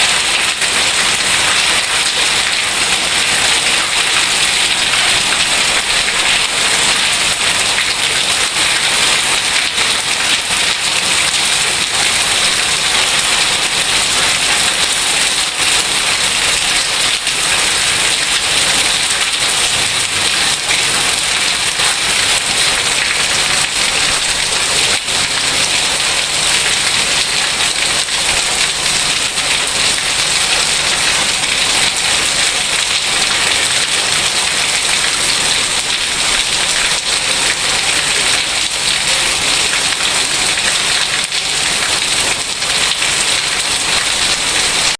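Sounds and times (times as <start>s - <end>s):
heavy rain falling: 0.0s - 44.9s.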